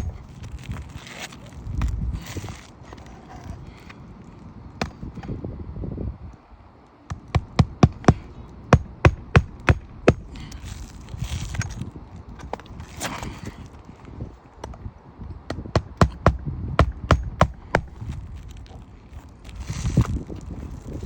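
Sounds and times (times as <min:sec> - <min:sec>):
shingles rustling: 0:00.0 - 0:05.2, 0:07.2 - 0:14.8, 0:16.9 - 0:21.0
hammer striking roofing nails: 0:07.1 - 0:10.3, 0:15.5 - 0:18.0.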